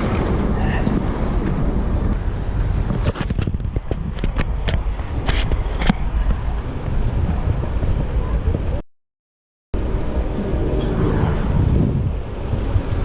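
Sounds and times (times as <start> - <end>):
bicycle road rumble: 0.0 - 8.8, 9.8 - 13.0
wind on microphone: 0.0 - 8.8, 9.8 - 13.0.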